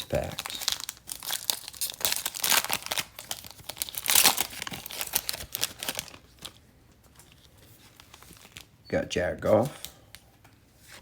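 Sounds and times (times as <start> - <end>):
wrapper tearing and crinkling: 0.0 - 6.6.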